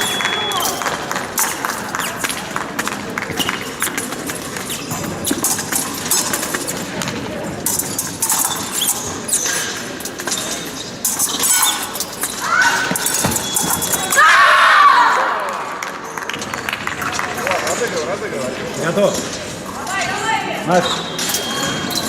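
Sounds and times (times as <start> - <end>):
loud shout: 14.1 - 15.7.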